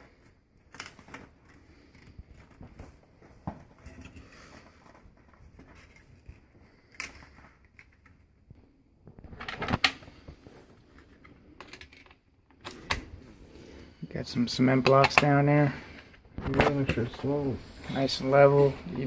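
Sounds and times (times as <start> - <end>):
clattering and scraping: 1.7 - 6.5.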